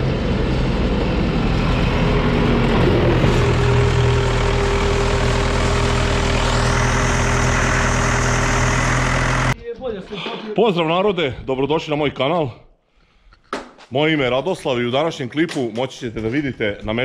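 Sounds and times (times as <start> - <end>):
tractor diesel engine drone: 0.0 - 9.6.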